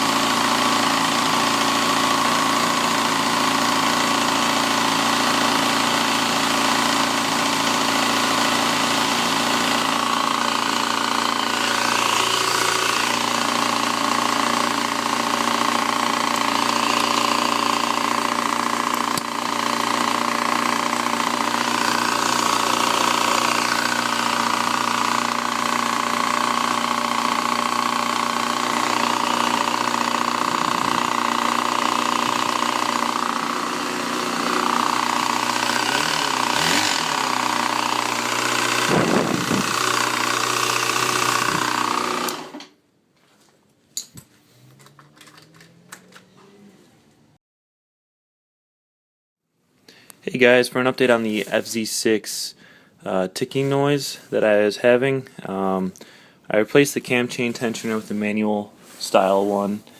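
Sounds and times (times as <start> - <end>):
motorcycle engine running: 0.0 - 42.6.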